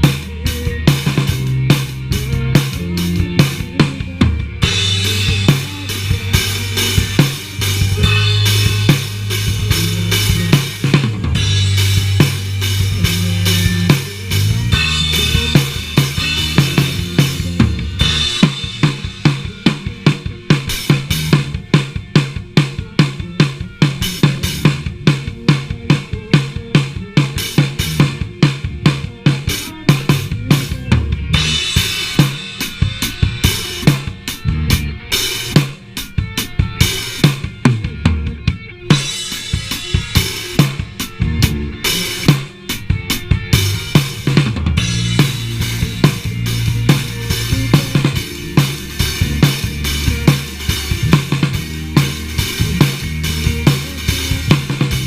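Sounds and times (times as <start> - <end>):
low pitched instrument: 0.0 - 20.0, 37.6 - 55.0
drum kit beat: 0.0 - 55.0
live band jamming: 0.0 - 55.0.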